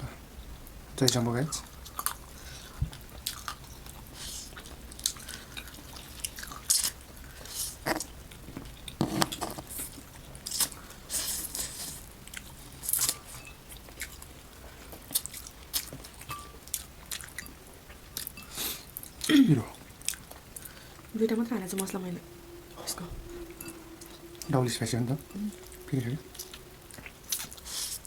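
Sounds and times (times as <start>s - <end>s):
chewing crunchy fried food: 1.6s - 21.2s, 25.6s - 28.0s.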